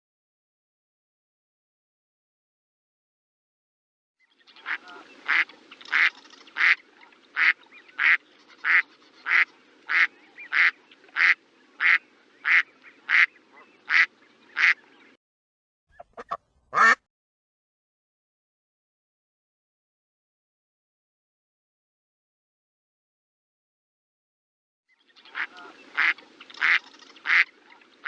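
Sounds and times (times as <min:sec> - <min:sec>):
faint low background noise: 0:04.2 - 0:15.2, 0:25.0 - 0:28.0
duck quacking: 0:04.6 - 0:06.8, 0:07.4 - 0:14.8, 0:16.0 - 0:17.0, 0:25.3 - 0:27.5.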